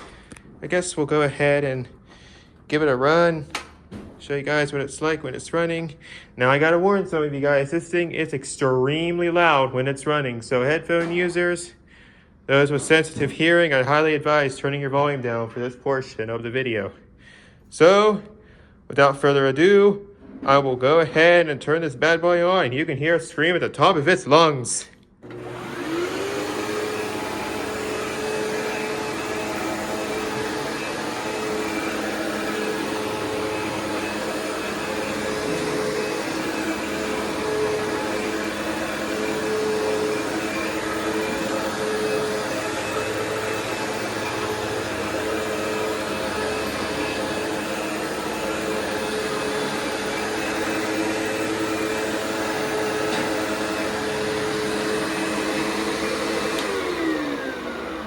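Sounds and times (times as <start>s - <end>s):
vacuum cleaner running: 25.2s - 58.0s.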